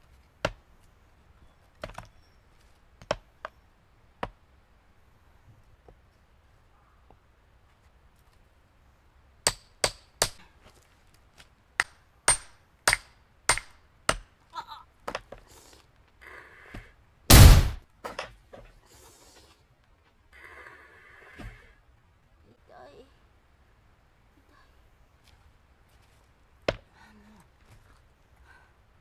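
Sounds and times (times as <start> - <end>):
hammer striking steel wedge: 11.8 - 14.2
loud crash: 17.3 - 17.8.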